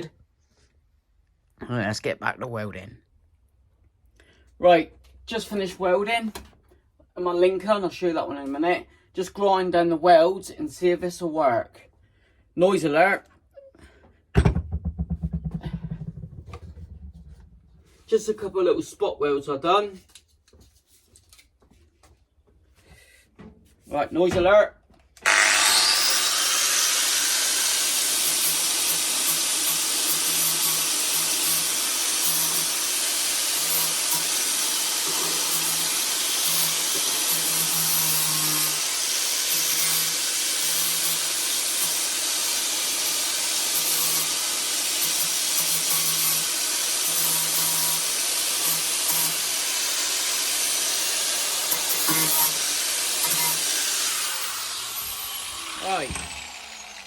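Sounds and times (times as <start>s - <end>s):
angle grinder grinding metal: 25.2s - 57.0s.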